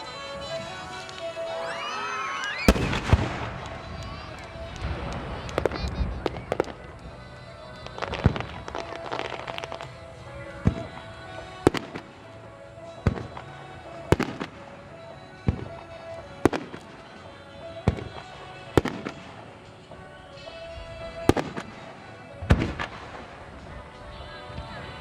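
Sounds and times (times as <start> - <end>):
background music: 0.0 - 25.0
firework shells booming: 2.7 - 7.0.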